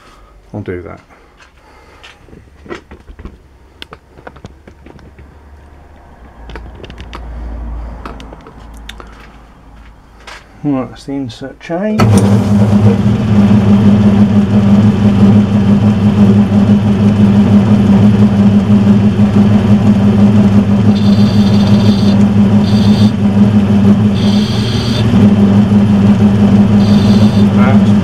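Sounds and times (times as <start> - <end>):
metal lathe motor hum: 19.2 - 28.0
short high-pitched whines: 20.9 - 23.2, 24.0 - 25.3, 26.6 - 28.0.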